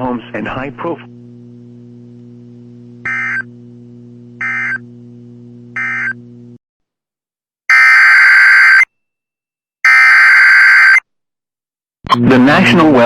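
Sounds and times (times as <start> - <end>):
steady electrical hum: 0.0 - 6.6
buzzy data tone bursts: 3.0 - 3.5, 4.4 - 4.8, 5.7 - 6.2.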